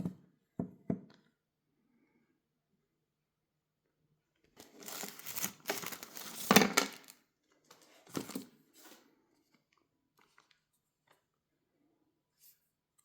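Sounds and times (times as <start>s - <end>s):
packaging crinkling and tearing: 4.6s - 7.2s
packaging rustling: 4.6s - 7.2s, 8.1s - 8.5s.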